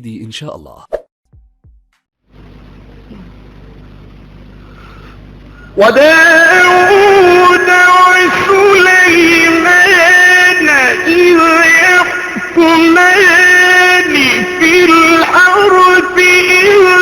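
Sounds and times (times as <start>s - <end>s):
man chanting melodically: 5.7s - 17.0s.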